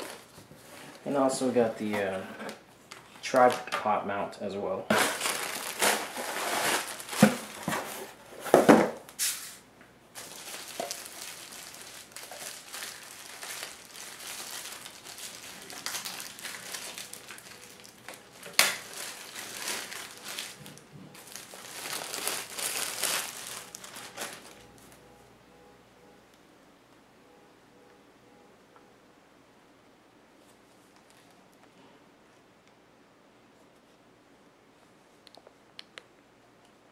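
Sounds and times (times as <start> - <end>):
packaging crinkling: 4.9 - 9.5, 10.2 - 25.0.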